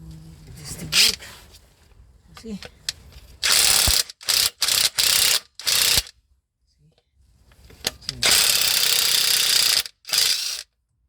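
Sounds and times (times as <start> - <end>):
impact wrench bursts: 3.4 - 6.1, 8.2 - 10.7.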